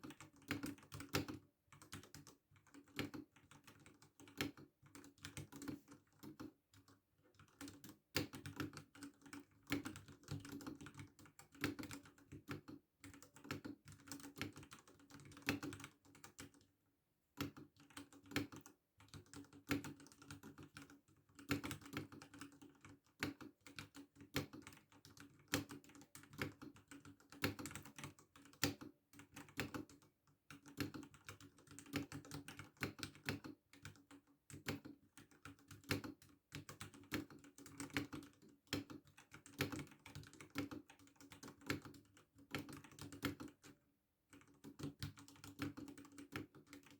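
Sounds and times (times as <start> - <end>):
mechanical keyboard keystroke clacks: 17.4 - 43.8, 44.4 - 46.9.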